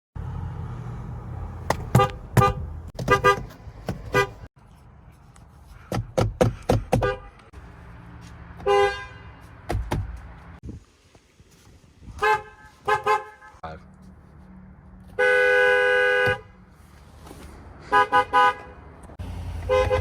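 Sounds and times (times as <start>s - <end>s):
vehicle horn toots: 1.9s - 4.5s, 8.6s - 9.4s, 15.2s - 16.5s, 17.9s - 18.8s, 19.6s - 20.0s
second horn honking: 19.6s - 20.0s.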